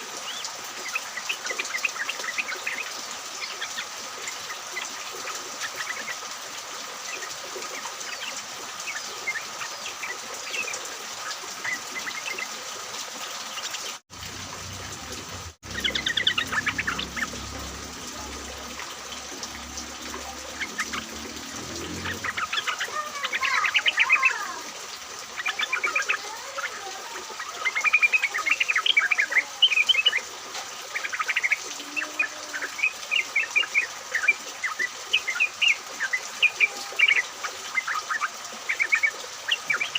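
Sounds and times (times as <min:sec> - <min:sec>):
birds chattering: 0:15.6 - 0:24.6.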